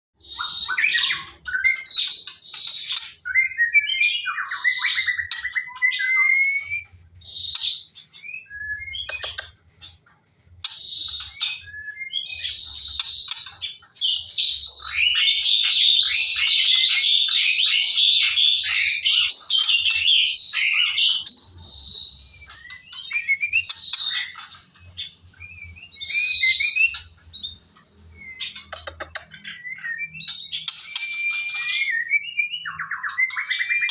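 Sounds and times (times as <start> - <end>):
songbird singing: 0.2 - 33.9.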